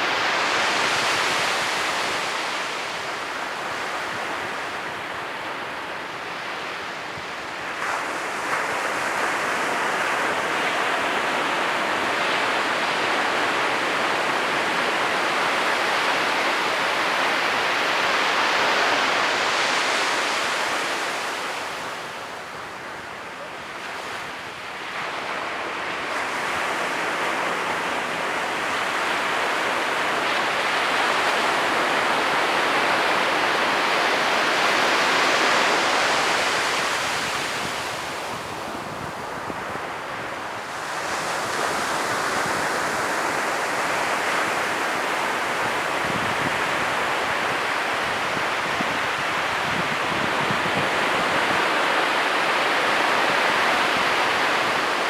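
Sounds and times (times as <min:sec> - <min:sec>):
ocean waves breaking on shore: 0:00.0 - 0:55.0.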